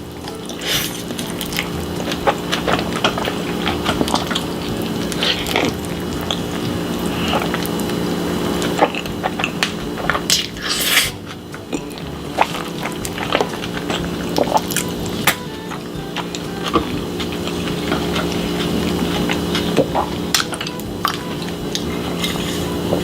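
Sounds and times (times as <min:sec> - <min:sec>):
low hum: 0:00.0 - 0:23.0
wet chewing and squishing: 0:00.1 - 0:23.0.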